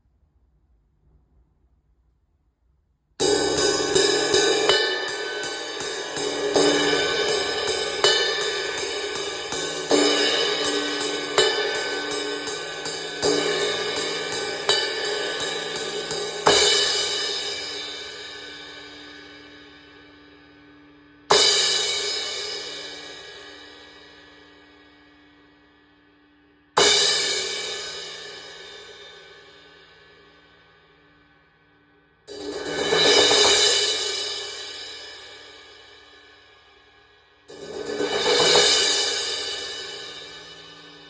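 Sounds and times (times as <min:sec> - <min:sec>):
crash cymbal struck: 0:03.2 - 0:19.0, 0:37.5 - 0:41.0
cymbal ringing wash: 0:03.2 - 0:19.4.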